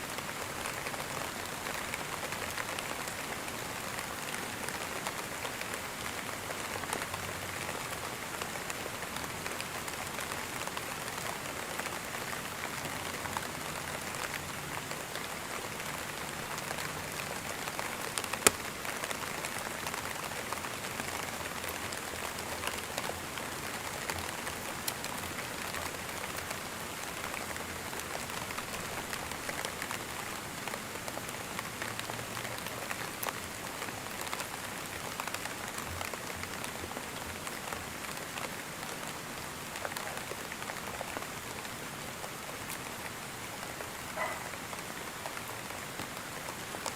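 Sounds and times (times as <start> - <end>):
steady rain: 0.0 - 46.9.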